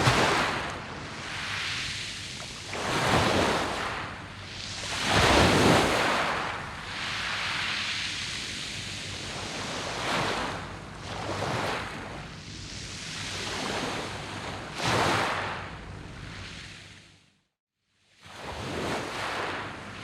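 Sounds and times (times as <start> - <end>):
waves washing up pebble beach: 0.0 - 11.9.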